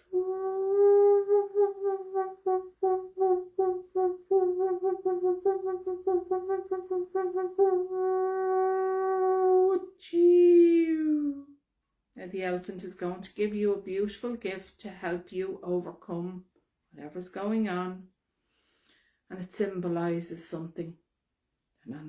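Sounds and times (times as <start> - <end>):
woman chanting: 0.0 - 11.5.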